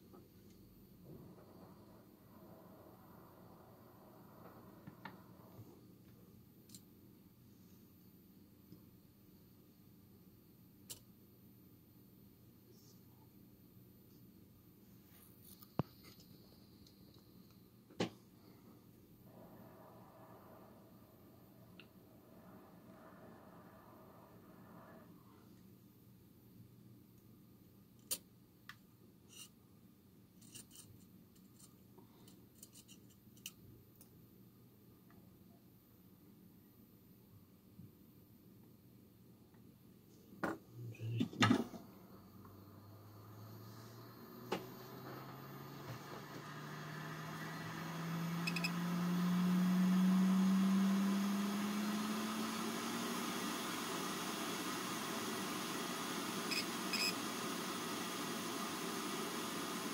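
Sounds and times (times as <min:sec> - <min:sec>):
electric hum rising in pitch: 0:00.9 - 0:06.0, 0:19.1 - 0:25.3, 0:40.8 - 0:59.9
hiss: 0:01.1 - 0:05.9, 0:19.2 - 0:25.5, 0:41.7 - 0:59.9.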